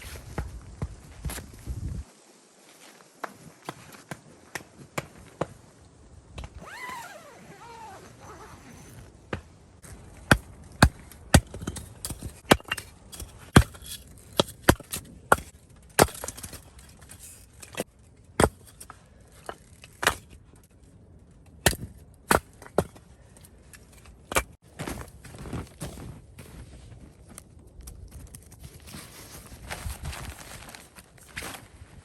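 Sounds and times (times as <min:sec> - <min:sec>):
axe chopping firewood: 0:10.2 - 0:16.6, 0:17.6 - 0:20.4, 0:21.6 - 0:23.0.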